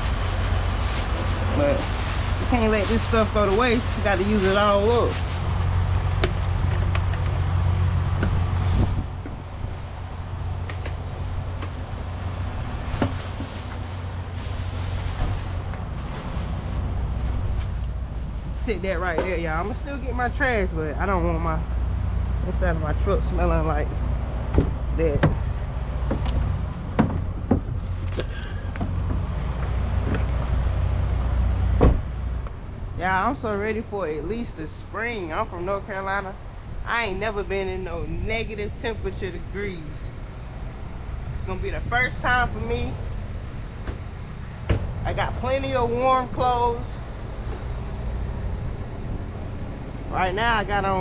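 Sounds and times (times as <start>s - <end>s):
truck engine idling: 0.0s - 37.8s, 38.5s - 51.0s
knocks and clatter of handling: 24.6s - 31.2s
truck diesel engine idling: 42.8s - 51.0s.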